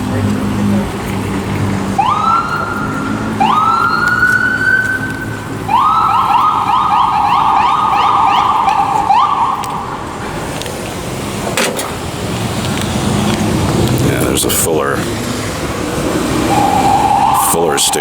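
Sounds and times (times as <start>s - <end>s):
street traffic: 0.0s - 18.0s
electronic siren wailing and yelping: 2.0s - 9.8s, 16.2s - 18.0s.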